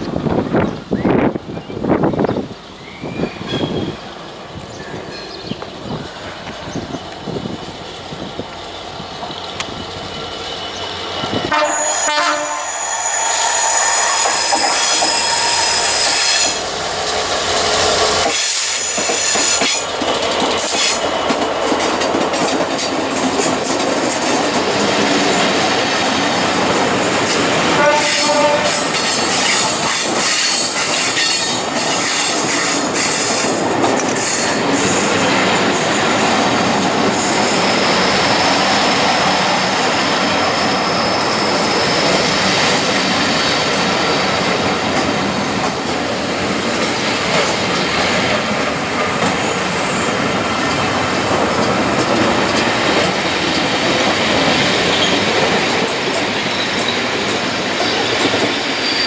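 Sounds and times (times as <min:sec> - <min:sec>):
train wheels on track: 0:00.0 - 0:59.0
high wheel squeal: 0:11.6 - 0:16.9, 0:17.6 - 0:19.9, 0:27.0 - 0:43.7, 0:57.8 - 0:59.0.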